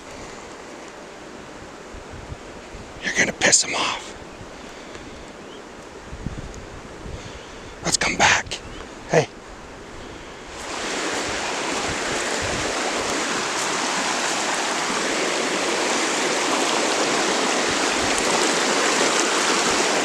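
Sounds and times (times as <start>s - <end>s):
running water rushing: 8.9s - 20.0s.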